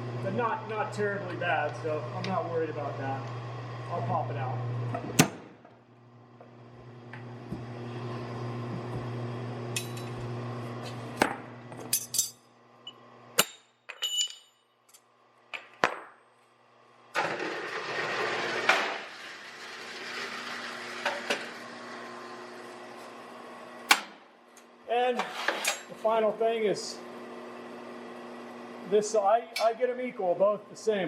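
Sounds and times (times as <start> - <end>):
steady hum: 0.0 - 5.0.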